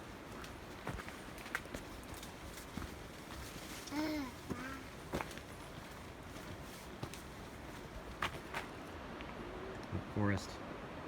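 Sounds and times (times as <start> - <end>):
baby babbling: 3.9 - 4.9.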